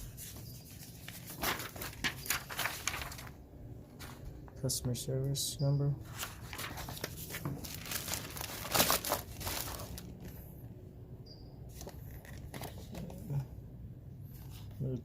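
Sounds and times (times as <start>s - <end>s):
packaging crinkling and rustling: 0.9s - 3.4s, 6.1s - 10.4s, 11.7s - 13.3s.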